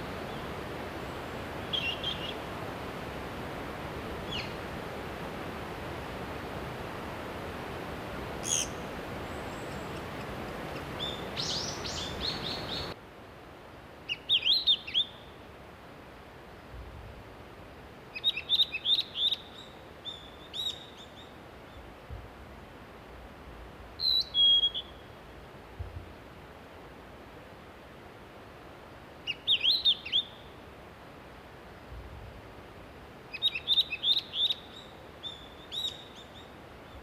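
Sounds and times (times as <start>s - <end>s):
steady hiss: 0.0s - 37.0s
small birds chirping: 8.4s - 13.0s, 33.3s - 37.0s.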